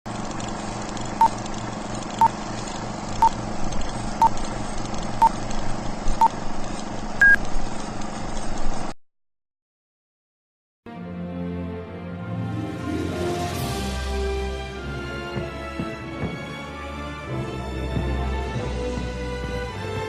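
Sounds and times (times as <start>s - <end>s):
short electronic beeps: 7.2s - 7.4s.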